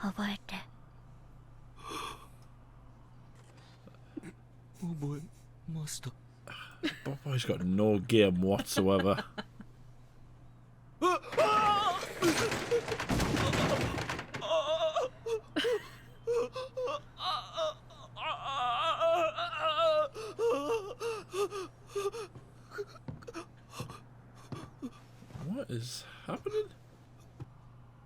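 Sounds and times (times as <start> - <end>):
person moaning and whimpering: 14.4 - 25.0.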